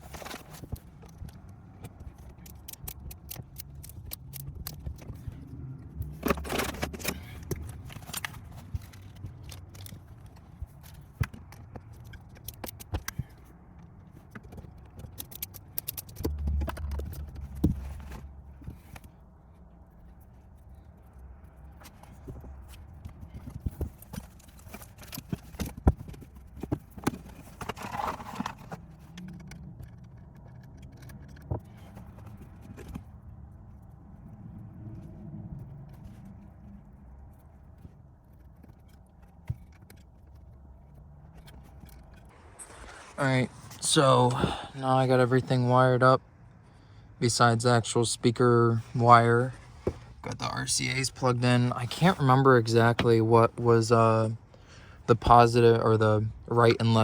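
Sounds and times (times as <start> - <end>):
tools clicking and scraping on wiring: 0.0 - 34.3, 35.0 - 44.6
low rumbles: 15.6 - 57.0.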